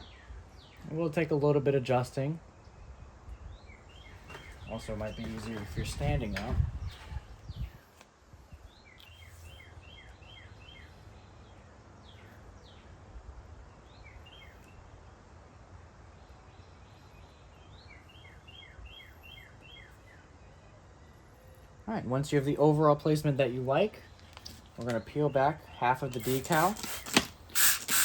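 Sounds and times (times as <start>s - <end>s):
low outdoor background noise: 0.0s - 28.0s
small bird chirping: 24.1s - 28.0s.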